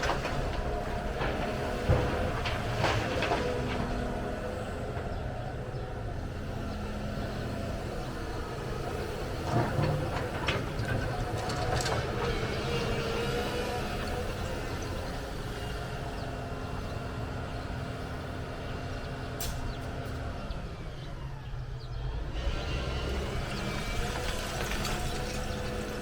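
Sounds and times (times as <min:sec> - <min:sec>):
metal clanks and knocks: 0:00.0 - 0:05.2
diesel engine running: 0:00.0 - 0:26.0.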